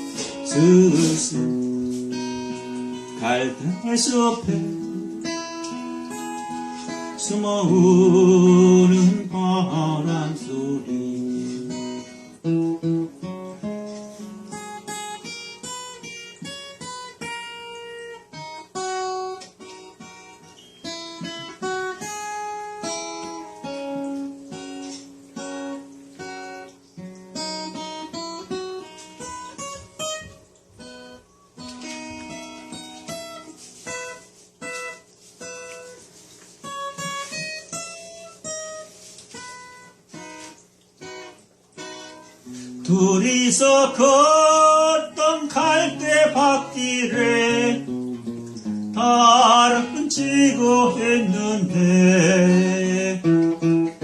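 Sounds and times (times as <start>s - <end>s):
acoustic guitar playing: 0.0s - 54.0s.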